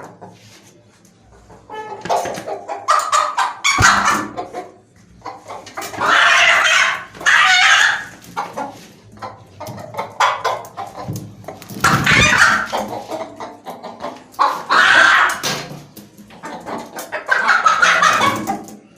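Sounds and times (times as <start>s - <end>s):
hen squawking: 11.9s - 13.0s.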